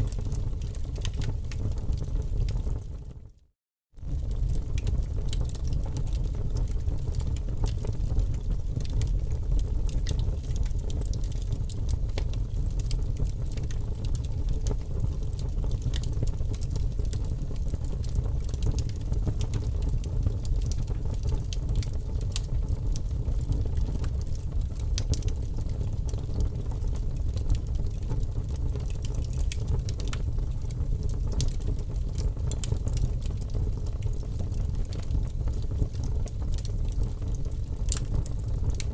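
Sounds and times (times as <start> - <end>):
fire flames rumbling: 0.0 - 3.2, 4.0 - 38.9
burning wood crackling: 31.2 - 33.5.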